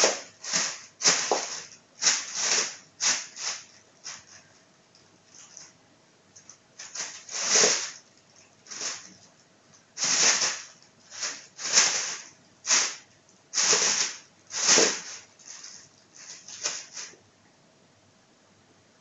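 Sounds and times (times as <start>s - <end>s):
plastic bag rustling: 0.0s - 4.6s, 6.8s - 17.2s.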